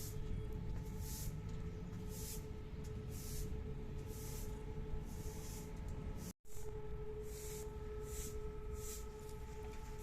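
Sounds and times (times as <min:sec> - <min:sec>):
siren steady tone: 0:06.6 - 0:10.0.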